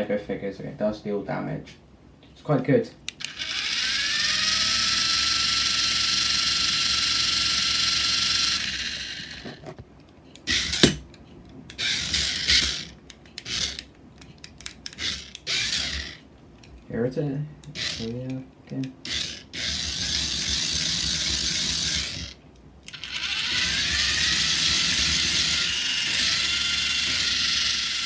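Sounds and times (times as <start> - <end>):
toy robot motor whirring: 3.1 - 9.8, 10.4 - 11.0, 11.7 - 16.2, 17.6 - 28.0.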